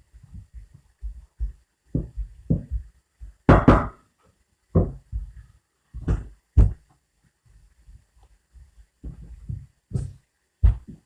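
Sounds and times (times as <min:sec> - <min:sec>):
rolling pin thudding on dough: 0:01.9 - 0:04.0, 0:04.8 - 0:05.4.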